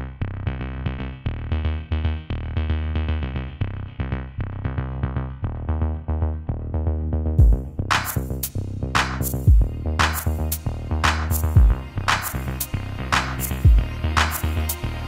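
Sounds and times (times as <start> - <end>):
synthesizer notes: 5.9 - 15.0
drum-machine beat: 7.4 - 15.0.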